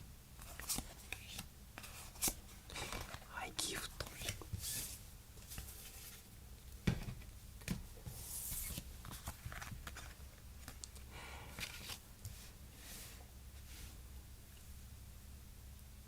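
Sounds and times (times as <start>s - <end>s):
cards and packaging rustling: 0.4s - 6.2s, 8.1s - 12.0s.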